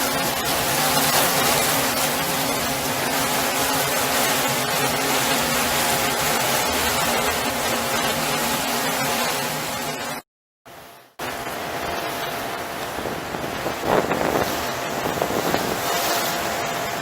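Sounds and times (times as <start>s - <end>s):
motorboat engine running: 10.7s - 17.0s.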